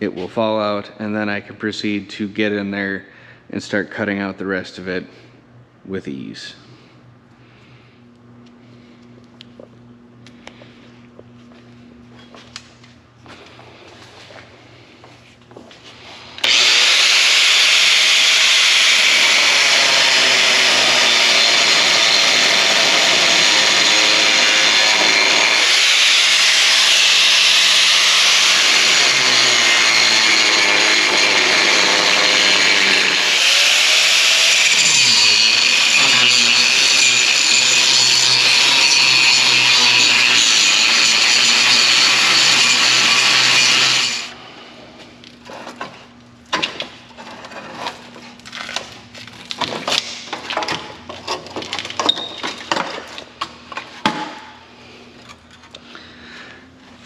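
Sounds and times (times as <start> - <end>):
power tool cutting metal: 16.4 - 44.4.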